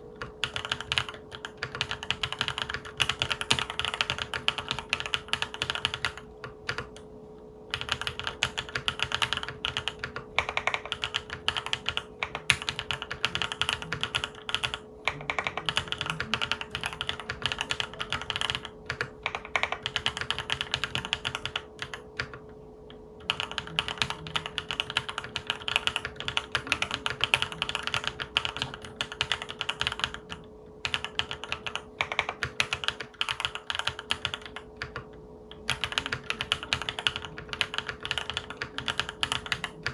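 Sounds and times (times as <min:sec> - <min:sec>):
mechanical keyboard typing: 0:00.2 - 0:07.0, 0:07.7 - 0:22.4, 0:23.2 - 0:39.9.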